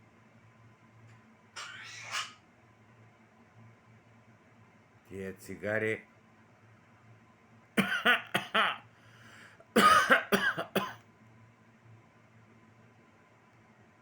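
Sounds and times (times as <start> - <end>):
parrot mimicking cough: 7.8 - 8.8, 9.8 - 11.0.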